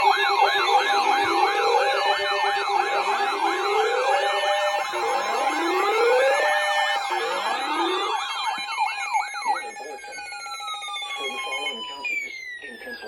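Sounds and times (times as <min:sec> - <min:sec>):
fast siren yelp: 0:00.0 - 0:13.0
slow siren wails: 0:00.0 - 0:13.0.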